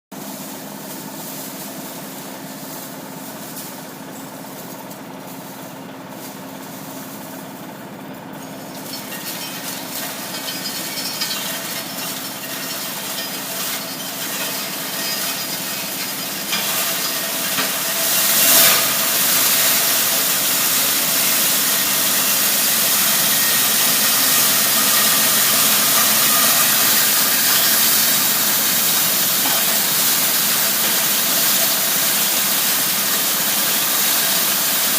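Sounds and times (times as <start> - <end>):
machine hum: 0.2 - 34.9
steel grinding rasp: 8.7 - 34.9.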